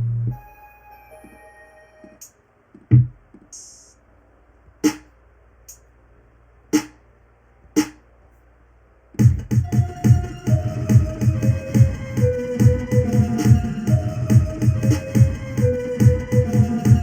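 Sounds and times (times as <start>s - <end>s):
dense electronic beat: 9.2s - 17.0s
electronic drum hits: 9.2s - 17.0s.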